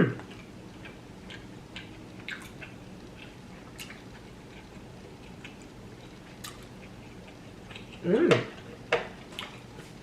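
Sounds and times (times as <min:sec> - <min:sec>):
faint low hum: 0:00.0 - 0:10.0
wet chewing mouth clicks: 0:00.2 - 0:08.0.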